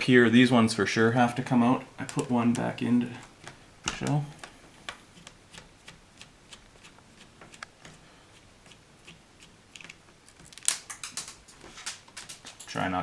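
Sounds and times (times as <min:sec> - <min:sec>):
sharp clicks and taps: 0:08.7 - 0:12.9.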